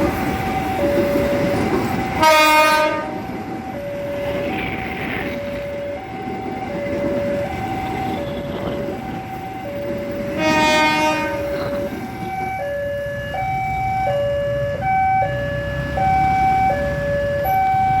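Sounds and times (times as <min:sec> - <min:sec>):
train rumbling past: 0:00.0 - 0:18.0
train horn: 0:02.1 - 0:03.3, 0:07.4 - 0:09.2, 0:10.2 - 0:11.9
level crossing two-tone alarm: 0:11.7 - 0:18.0.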